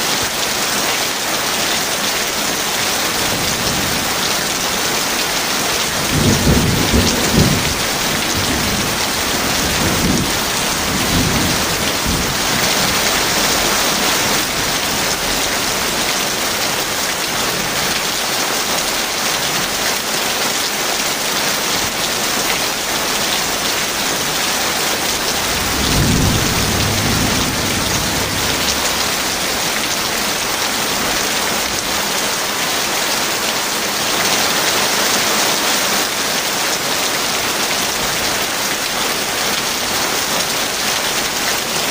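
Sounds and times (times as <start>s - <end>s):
heavy rain falling: 0.0s - 41.9s
low thunder rumbling: 3.2s - 16.7s, 24.0s - 31.9s.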